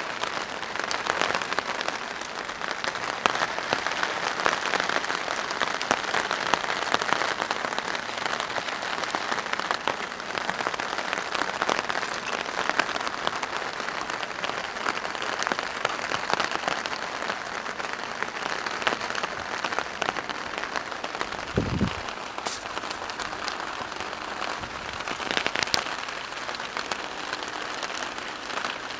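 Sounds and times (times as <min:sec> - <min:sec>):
rain drumming on plastic tarp: 0:00.0 - 0:28.9.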